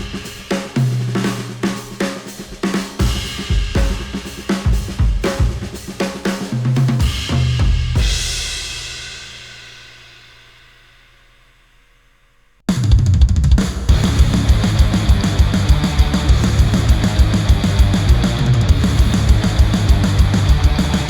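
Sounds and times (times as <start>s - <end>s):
loud drum kit: 0.0s - 11.8s, 12.7s - 21.0s
music through headphones: 13.9s - 21.0s.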